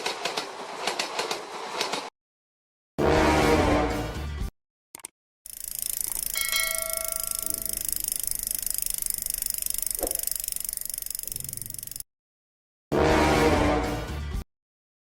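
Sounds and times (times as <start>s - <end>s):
bell-like ding: 6.4s - 7.7s.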